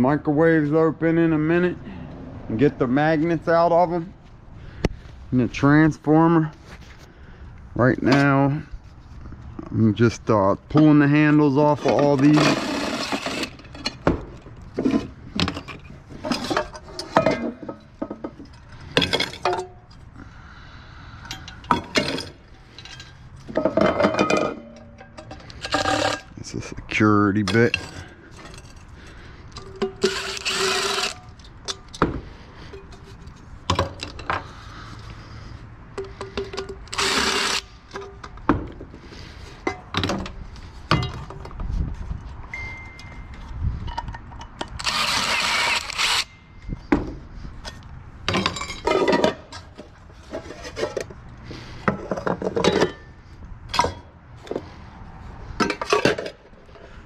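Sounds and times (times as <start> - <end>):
metal parts clicking and clinking: 21.2 - 26.4
cordless drill whining: 30.0 - 31.2, 36.9 - 37.7, 44.8 - 46.3.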